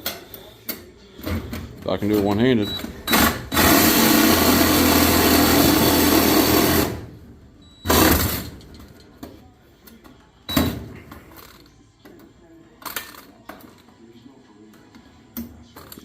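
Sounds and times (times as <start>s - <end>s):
power tool cutting sheet metal: 3.2s - 7.1s.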